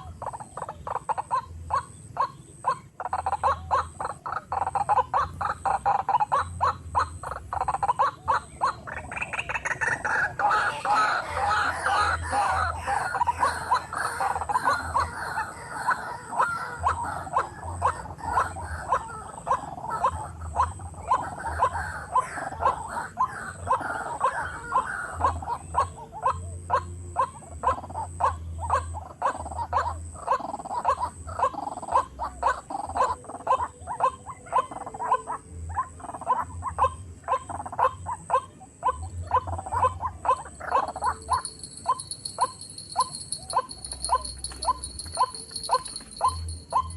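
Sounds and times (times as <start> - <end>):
bird croaking calls: 0.0 - 46.9.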